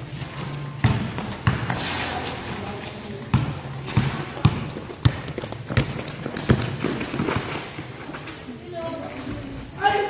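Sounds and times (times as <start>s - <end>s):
basketball bouncing on court: 0.1s - 7.8s.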